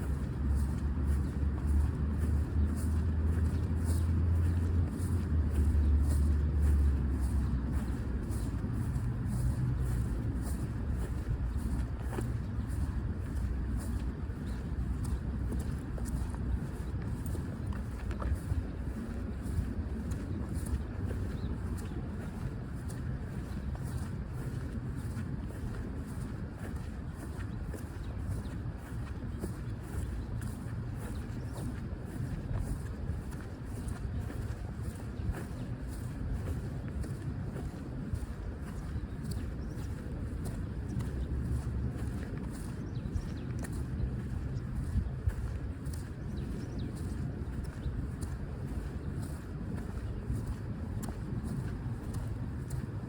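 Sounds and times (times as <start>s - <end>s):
footsteps on a path: 0.0s - 53.0s
road traffic rumble: 0.0s - 53.0s.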